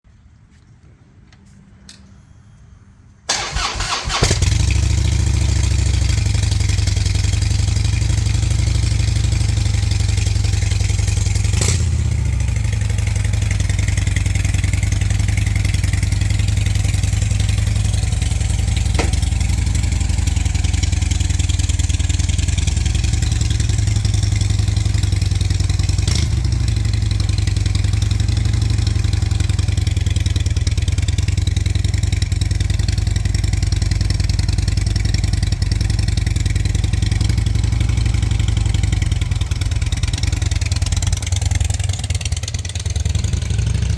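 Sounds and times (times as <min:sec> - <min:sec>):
motorcycle engine cranking: 0:03.3 - 0:08.9, 0:09.6 - 0:32.0
motorcycle engine idling: 0:03.3 - 0:43.9.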